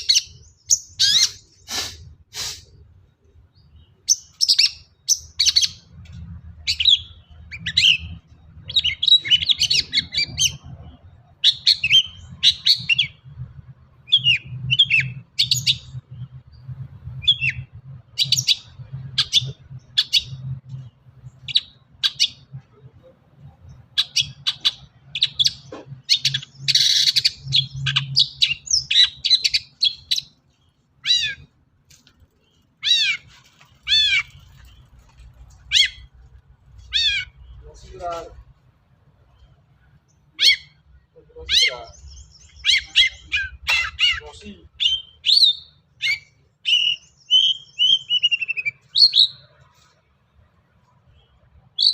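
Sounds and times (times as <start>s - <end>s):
harsh rasping bird call: 31.0s - 31.5s, 32.8s - 34.6s, 36.9s - 37.5s
bird singing chirps and whistles: 44.8s - 49.4s.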